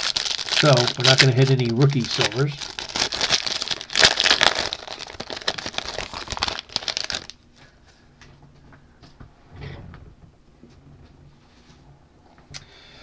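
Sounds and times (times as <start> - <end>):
foil wrapper crinkling: 0.0 - 7.4.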